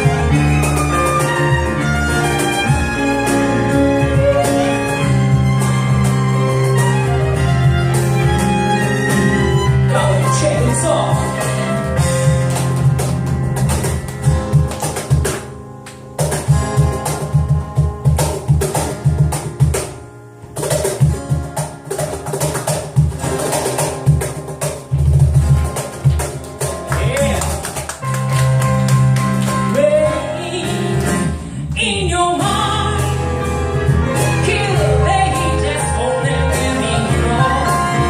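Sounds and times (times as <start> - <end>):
band playing held chords: 0.0 - 21.6, 32.4 - 38.0
drums steady beat: 0.0 - 31.4, 32.3 - 38.0.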